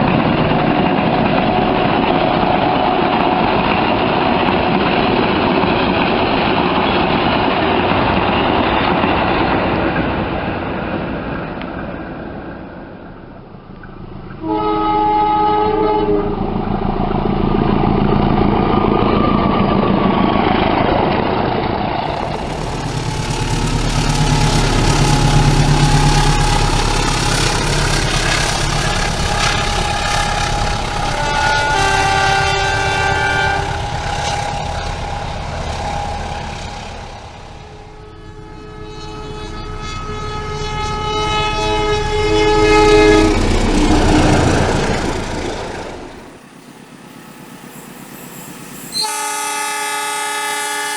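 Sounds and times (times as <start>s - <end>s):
train rumble and rail clatter: 0.0s - 49.2s
locomotive horn blasts: 14.4s - 16.5s, 22.0s - 35.4s, 37.7s - 45.1s, 48.8s - 50.9s.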